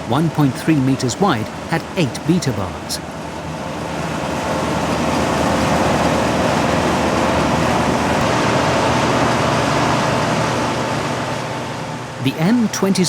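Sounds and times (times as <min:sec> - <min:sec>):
combine harvester working: 0:00.0 - 0:13.0
faint steady whine: 0:00.0 - 0:13.0.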